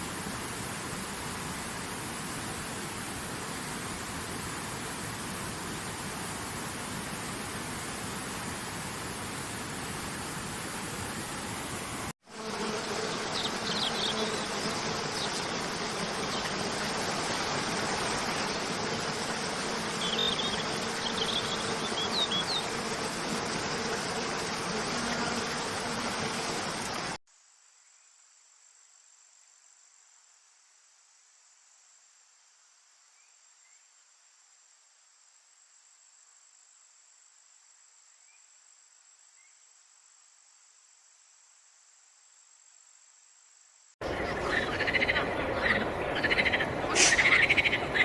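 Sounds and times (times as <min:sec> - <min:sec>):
rushing water: 0:00.0 - 0:12.1, 0:14.4 - 0:27.2
crickets chirring: 0:00.0 - 0:48.0.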